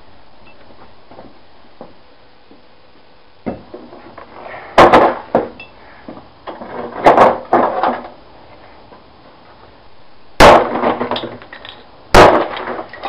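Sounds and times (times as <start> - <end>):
sharp knocks: 4.8 - 5.6.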